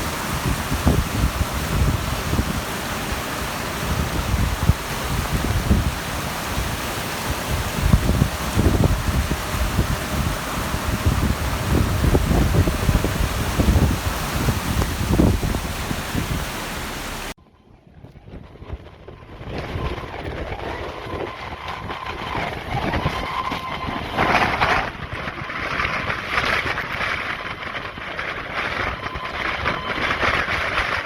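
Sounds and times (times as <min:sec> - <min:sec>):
vehicle running noise: 0:00.0 - 0:17.4
wind and rain buffeting microphone: 0:00.0 - 0:31.0.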